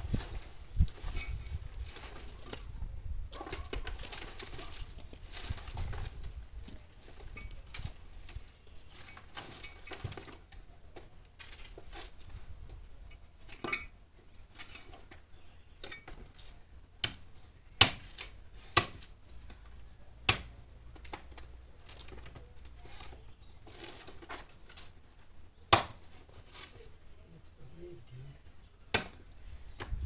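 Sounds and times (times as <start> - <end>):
rustling of branches: 0.0 - 30.0
firewood sticks knocking together: 3.3 - 26.9, 28.9 - 30.0.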